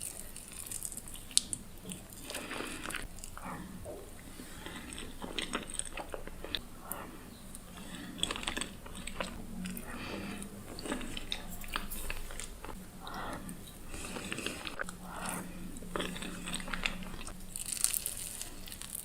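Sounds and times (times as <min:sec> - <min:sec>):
pastry crunching and chewing: 0:00.0 - 0:19.0
wet mouth sounds: 0:00.0 - 0:19.0.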